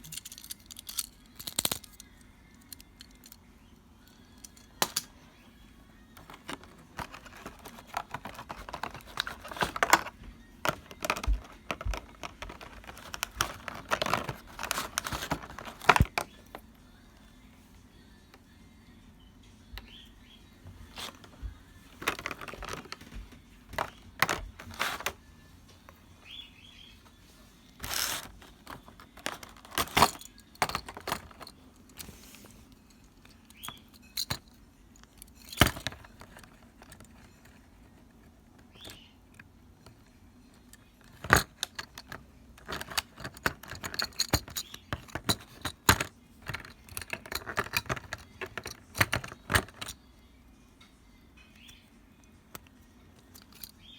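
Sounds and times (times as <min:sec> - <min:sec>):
plastic toy pieces clicking: 0:00.0 - 0:03.4, 0:06.2 - 0:16.3, 0:41.1 - 0:50.0.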